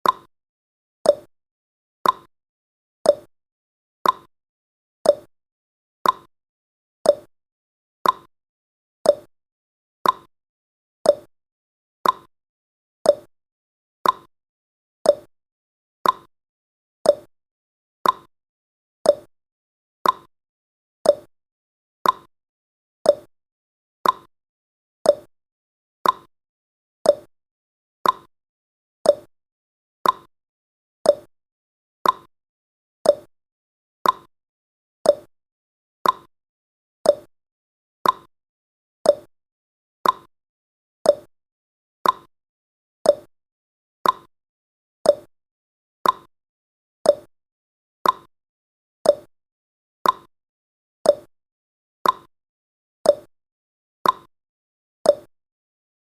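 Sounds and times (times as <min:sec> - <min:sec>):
clock ticking tick-tock: 0:00.0 - 0:00.3, 0:01.1 - 0:01.3, 0:02.0 - 0:02.3, 0:03.1 - 0:03.3, 0:04.0 - 0:04.3, 0:05.1 - 0:05.3, 0:06.0 - 0:06.3, 0:07.1 - 0:07.3, 0:08.0 - 0:08.3, 0:09.1 - 0:09.3, 0:10.0 - 0:10.3, 0:11.0 - 0:11.3, 0:12.0 - 0:12.3, 0:13.1 - 0:13.3, 0:14.0 - 0:14.3, 0:15.0 - 0:15.3, 0:16.0 - 0:16.3, 0:17.0 - 0:17.3, 0:18.0 - 0:18.3, 0:19.0 - 0:19.3, 0:20.0 - 0:20.3, 0:21.0 - 0:21.3, 0:22.0 - 0:22.3, 0:23.0 - 0:23.3, 0:24.0 - 0:24.3, 0:25.0 - 0:25.3, 0:26.0 - 0:26.3, 0:27.0 - 0:27.3, 0:28.0 - 0:28.3, 0:29.0 - 0:29.3, 0:30.0 - 0:30.3, 0:31.0 - 0:31.3, 0:32.0 - 0:32.3, 0:33.0 - 0:33.3, 0:34.0 - 0:34.3, 0:35.0 - 0:35.3, 0:36.0 - 0:36.3, 0:37.0 - 0:37.3, 0:38.0 - 0:38.3, 0:39.0 - 0:39.3, 0:40.0 - 0:40.3, 0:41.0 - 0:41.3, 0:42.0 - 0:42.3, 0:43.0 - 0:43.3, 0:44.0 - 0:44.3, 0:45.0 - 0:45.3, 0:46.0 - 0:46.3, 0:47.0 - 0:47.3, 0:48.0 - 0:48.3, 0:49.0 - 0:49.3, 0:50.0 - 0:50.3, 0:51.1 - 0:51.3, 0:52.0 - 0:52.3, 0:53.1 - 0:53.3, 0:54.0 - 0:54.3, 0:55.1 - 0:55.3.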